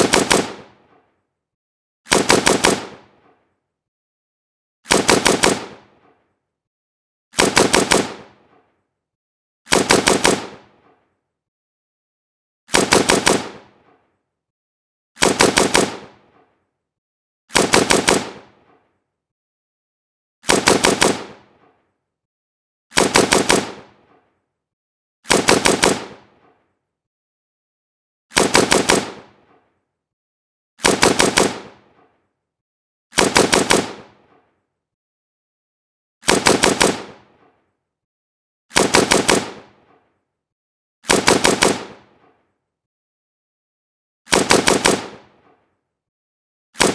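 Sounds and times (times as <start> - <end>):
automatic rifle bursts: 0.0 - 0.6
assault rifle automatic bursts: 0.0 - 0.8, 2.1 - 3.3, 4.9 - 6.0, 7.4 - 8.5, 9.7 - 10.8, 12.7 - 13.8, 15.2 - 16.3, 17.5 - 18.6, 20.4 - 21.5, 22.9 - 24.0, 25.3 - 26.4, 28.3 - 29.4, 30.8 - 31.9, 33.2 - 34.2, 36.2 - 37.3, 38.7 - 39.8, 41.0 - 42.2, 44.3 - 45.4
gunfire echo ringing: 0.0 - 1.2, 2.1 - 3.5, 4.9 - 6.4, 7.4 - 8.8, 9.7 - 11.1, 12.7 - 14.1, 15.2 - 16.6, 17.5 - 19.0, 20.4 - 21.8, 22.9 - 24.4, 25.3 - 26.7, 28.3 - 29.8, 30.8 - 32.2, 36.2 - 37.6, 38.7 - 40.1, 41.1 - 42.4, 44.3 - 45.6.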